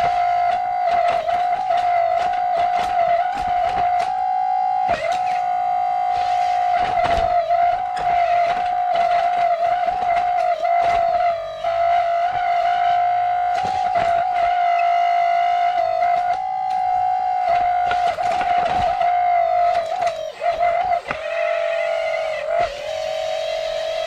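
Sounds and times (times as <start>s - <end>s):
high-pitched electric motor whine: 0.0s - 24.0s.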